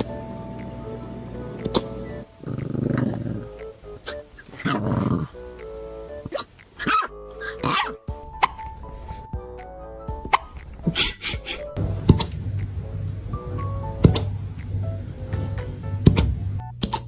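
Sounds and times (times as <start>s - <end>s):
dog growling: 1.8s - 5.4s, 6.2s - 8.0s
dog hiccuping: 6.2s - 8.7s.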